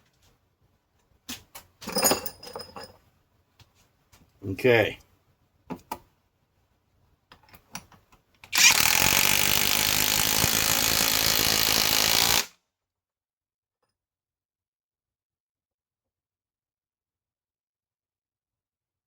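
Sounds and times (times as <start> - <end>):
impact wrench hammering: 8.5 - 12.5.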